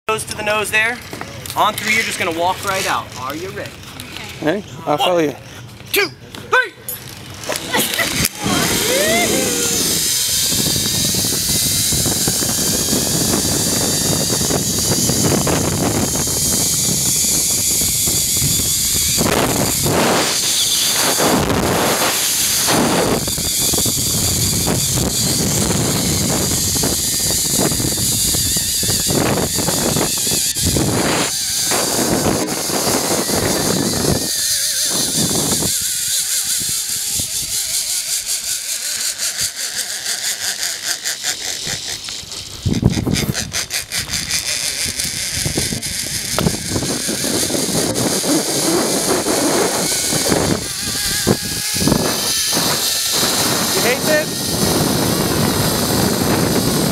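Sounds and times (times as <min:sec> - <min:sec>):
zipline trolley whirring on cable: 0:00.1 - 0:56.9
wind rushing over microphone: 0:07.6 - 0:37.8, 0:42.5 - 0:56.9.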